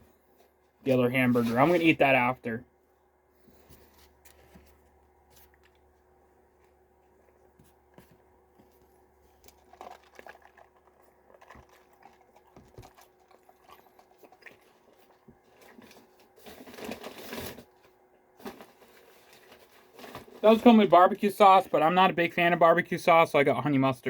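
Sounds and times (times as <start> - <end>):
paper packaging rustling: 14.6 - 21.3.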